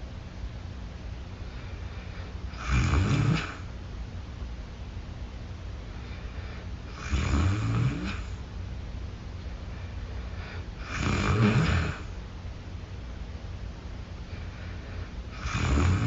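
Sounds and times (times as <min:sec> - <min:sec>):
low steady hum: 0:00.0 - 0:16.0
person snoring: 0:02.5 - 0:03.7, 0:06.9 - 0:08.4, 0:10.8 - 0:12.2, 0:15.3 - 0:16.0.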